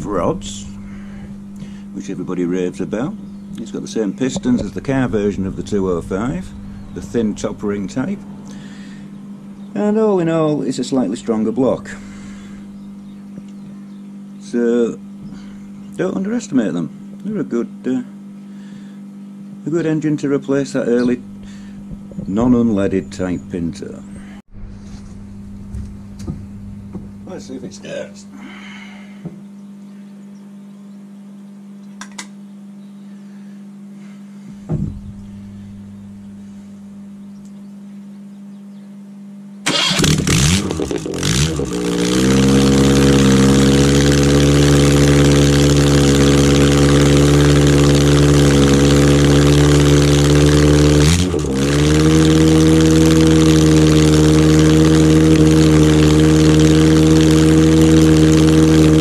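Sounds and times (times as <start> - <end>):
car engine starting and idling: 0.0 - 10.0, 39.6 - 59.0
engine knocks: 2.8 - 9.8, 21.2 - 23.3, 24.5 - 27.3, 34.5 - 35.4.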